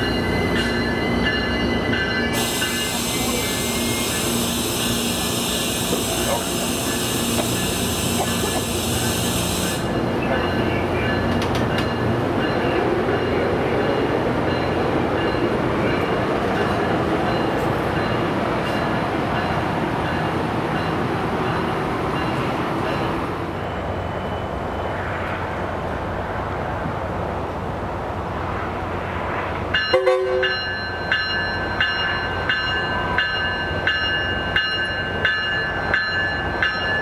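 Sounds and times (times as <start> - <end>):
train wheels rumbling: 0.0 - 27.0
bright hiss: 2.4 - 10.0.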